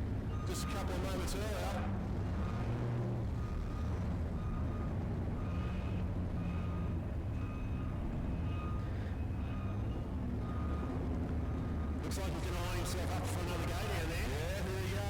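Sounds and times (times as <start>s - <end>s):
vehicle reversing beeper: 0.2s - 1.7s, 3.3s - 12.8s
engine running: 1.6s - 15.0s.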